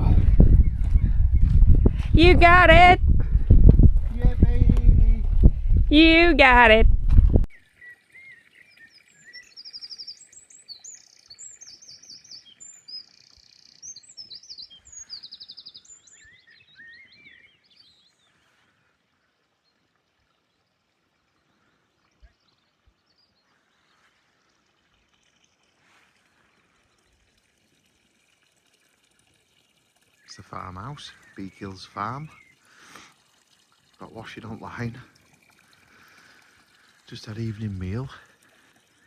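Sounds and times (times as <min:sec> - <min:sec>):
songbird singing trills: 0:07.5 - 0:18.3.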